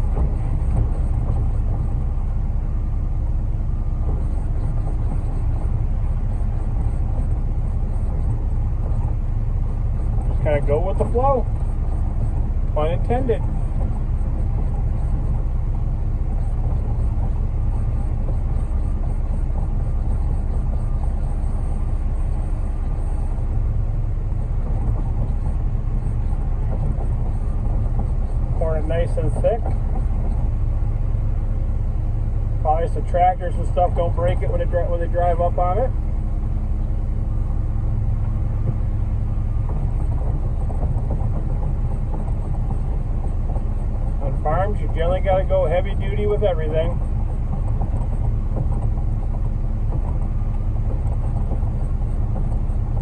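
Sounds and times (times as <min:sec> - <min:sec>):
diesel engine low rumble: 0:00.0 - 0:53.0.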